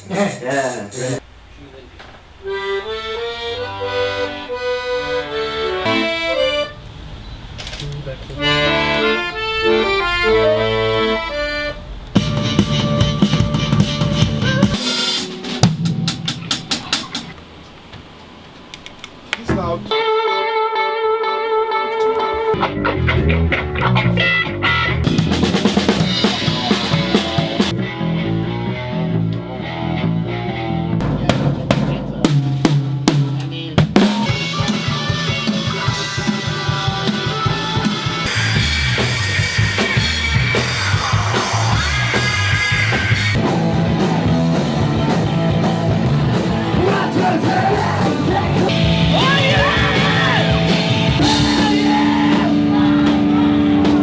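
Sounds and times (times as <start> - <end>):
pitched instruments: 2.4 - 6.9, 8.4 - 17.6
drums playing a busy beat: 12.1 - 18.2, 25.0 - 27.8, 31.0 - 54.0.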